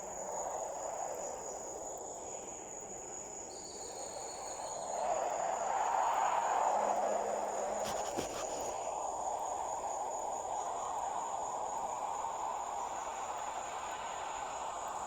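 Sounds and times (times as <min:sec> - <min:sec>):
crickets trilling: 0:07.6 - 0:08.9.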